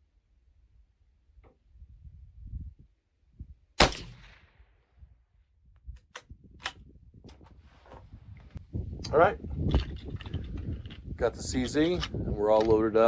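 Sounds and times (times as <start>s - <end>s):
rifle shot: 3.8s - 4.7s.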